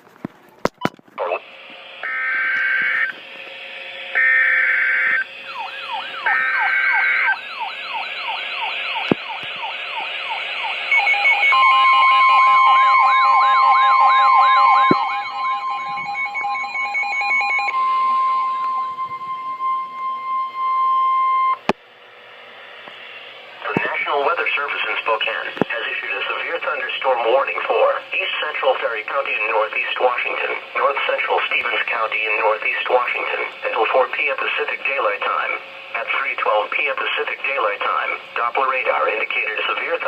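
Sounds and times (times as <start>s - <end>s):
siren-like warble: 1.4s - 24.3s
steady alert tone: 4.0s - 21.6s.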